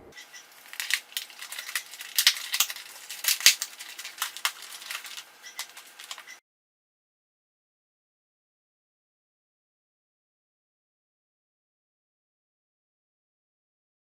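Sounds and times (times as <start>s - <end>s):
utensils clattering against dishes: 0.1s - 6.4s.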